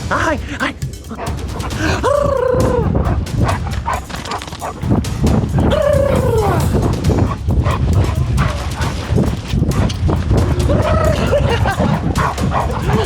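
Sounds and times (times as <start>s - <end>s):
low rumbling and clicking: 1.1s - 13.0s.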